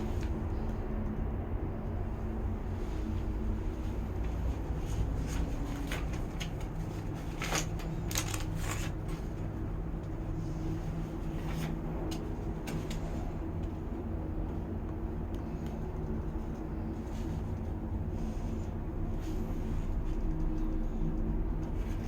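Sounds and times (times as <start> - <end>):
vehicle rumble and hum: 0.0 - 22.0
light clicks and rattles: 4.2 - 13.9.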